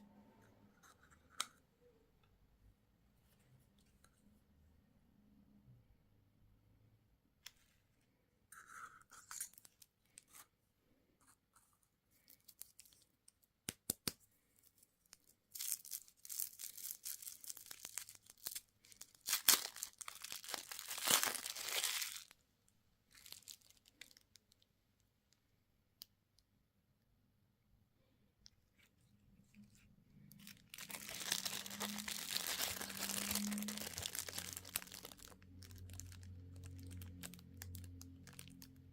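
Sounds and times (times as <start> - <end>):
candy wrapper tearing and crinkling: 15.0 - 22.4, 23.1 - 24.6, 30.3 - 38.9.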